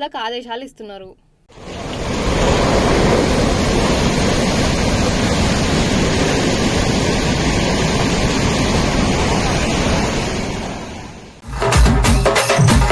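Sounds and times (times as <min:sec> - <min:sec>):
water rushing: 0:01.5 - 0:11.4.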